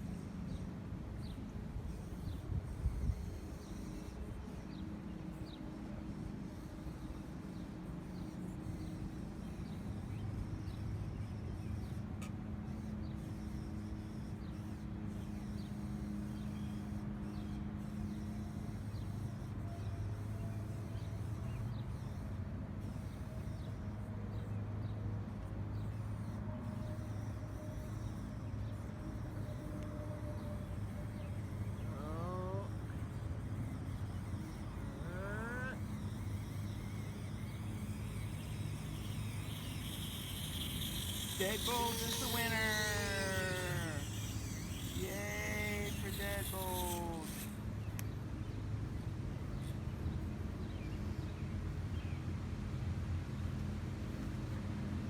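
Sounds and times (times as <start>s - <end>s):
small electric motors humming: 0.0s - 55.0s
rising chirp: 34.8s - 47.6s.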